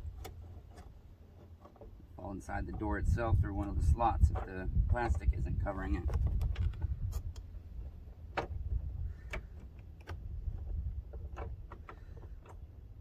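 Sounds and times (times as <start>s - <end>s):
steady low rumble: 2.2s - 9.6s.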